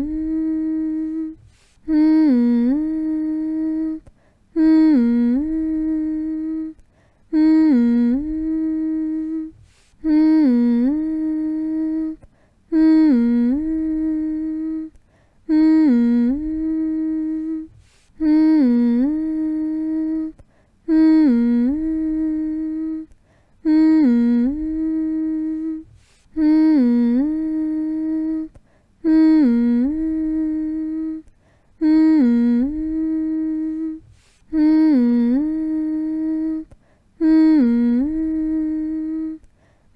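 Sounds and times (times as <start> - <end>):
person humming: 0.0 - 39.5.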